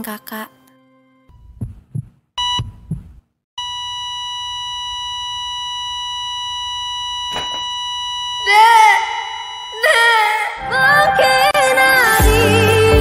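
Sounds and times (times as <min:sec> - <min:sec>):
dull low thumps: 0:01.4 - 0:03.3
short electronic beep: 0:02.4 - 0:02.7, 0:06.4 - 0:09.9
patient monitor flatline tone: 0:03.6 - 0:10.2.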